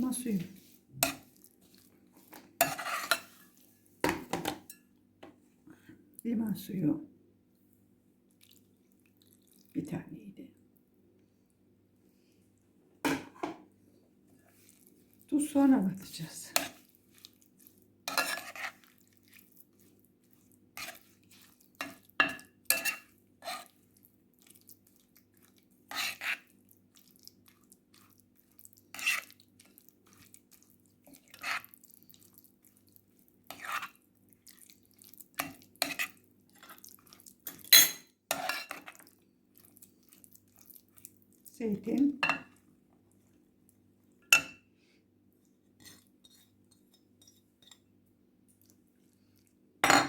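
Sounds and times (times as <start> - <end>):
spoon scraping against a bowl: 2.6 - 3.6, 18.1 - 19.4, 20.8 - 23.8, 25.9 - 26.5, 28.9 - 29.4, 31.1 - 31.7, 33.5 - 34.0, 35.4 - 36.8, 37.4 - 39.0, 45.8 - 47.8.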